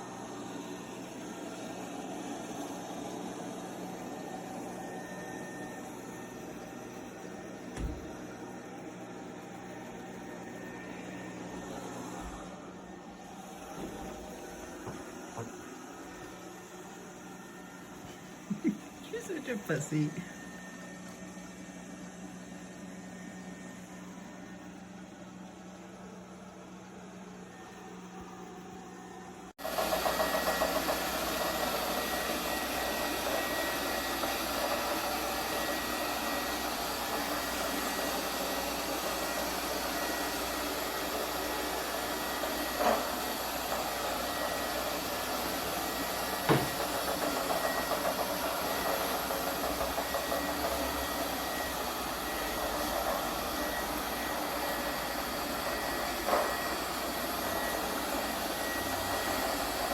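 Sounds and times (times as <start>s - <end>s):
robot vacuum motor whirring: 29.7s - 59.9s.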